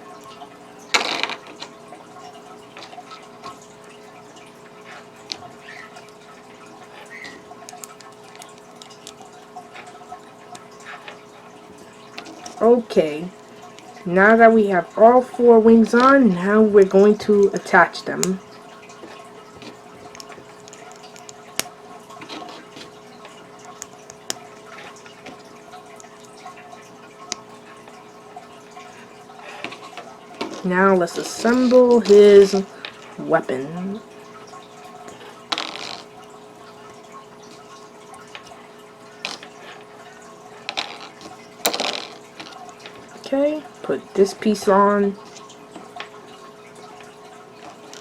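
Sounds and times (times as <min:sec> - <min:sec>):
faint steady hum: 0:00.0 - 0:48.0
plastic pieces tapping and rustling: 0:00.9 - 0:01.7, 0:19.0 - 0:25.4, 0:29.6 - 0:33.1, 0:35.1 - 0:36.1, 0:39.2 - 0:39.6, 0:40.6 - 0:43.1, 0:47.6 - 0:48.0
plastic bricks clicking: 0:31.2 - 0:33.0, 0:35.5 - 0:36.1, 0:40.7 - 0:43.0
handling noise: 0:40.6 - 0:43.1.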